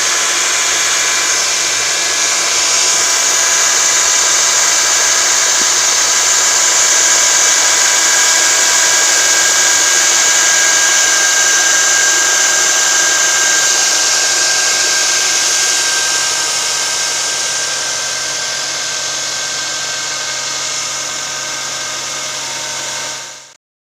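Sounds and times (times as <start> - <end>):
mechanical running hiss: 0.0 - 23.1
faint steady whine: 0.0 - 23.5.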